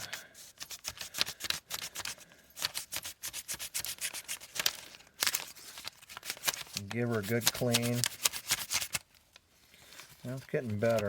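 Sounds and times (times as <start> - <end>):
paper scraping metal rod: 6.2 - 9.0.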